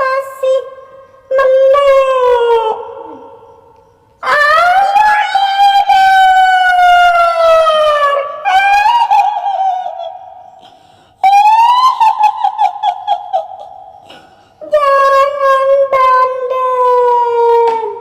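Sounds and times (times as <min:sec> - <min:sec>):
woman wailing: 0:11.2 - 0:17.9.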